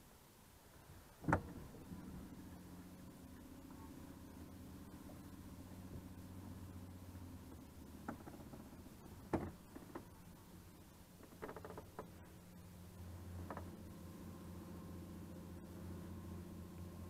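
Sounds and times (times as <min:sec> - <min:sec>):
faint low hum: 0:00.0 - 0:17.0
light knocks on a boat: 0:08.0 - 0:10.1.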